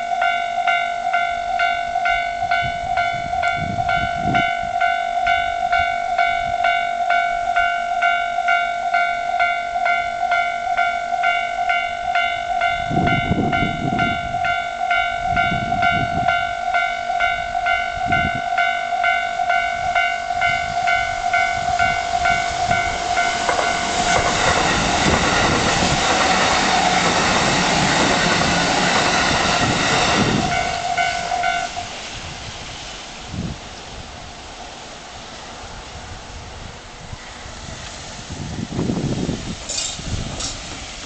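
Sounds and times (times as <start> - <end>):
level crossing bell dinging: 0.0 - 24.2, 30.5 - 31.8
train passing: 0.0 - 41.0.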